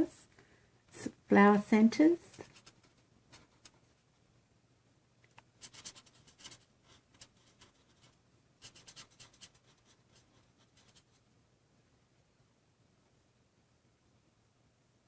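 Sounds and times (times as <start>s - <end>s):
marker scratching on cardstock: 5.6s - 11.2s.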